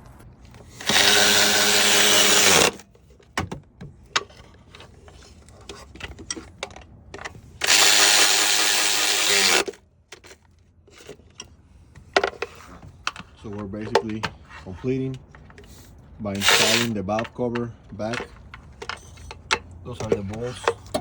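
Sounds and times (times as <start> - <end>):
power tool whining: 0.6 - 2.8, 7.6 - 9.8, 16.4 - 17.0.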